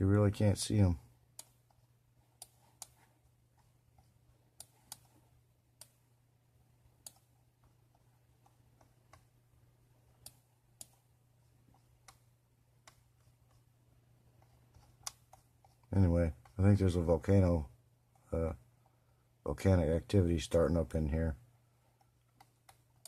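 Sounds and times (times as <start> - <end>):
low steady hum: 0.0 - 23.0
faint computer mouse clicks: 3.6 - 5.2, 7.0 - 7.3, 11.7 - 13.6, 14.4 - 16.6, 22.0 - 23.0.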